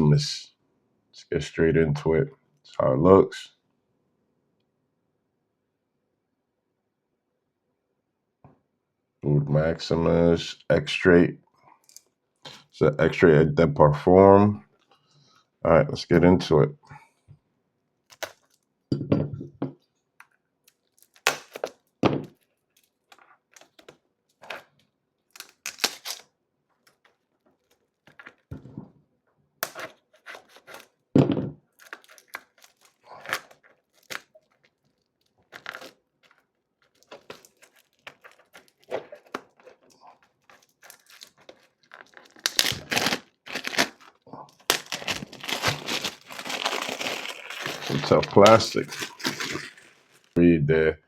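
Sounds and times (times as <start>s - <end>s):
cellophane tearing and crinkling: 18.1s - 18.7s, 20.7s - 26.3s, 26.9s - 28.5s, 29.6s - 31.0s, 31.7s - 50.4s.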